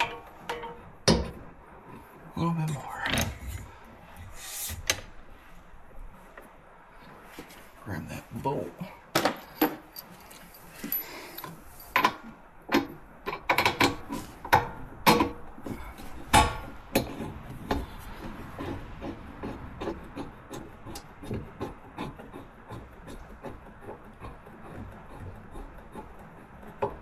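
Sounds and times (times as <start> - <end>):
tools knocking against metal: 0.0 - 1.4, 11.9 - 15.4.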